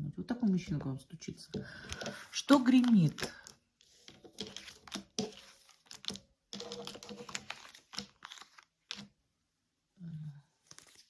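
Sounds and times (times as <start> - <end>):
cards rustling and sliding: 1.8 - 9.2, 10.6 - 11.0.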